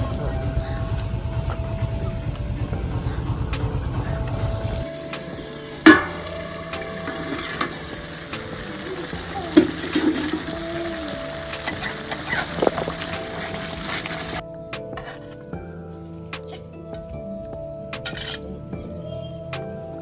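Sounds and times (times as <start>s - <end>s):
food sizzling in oil: 4.8s - 14.4s
utensil knock on pan: 5.8s - 10.9s.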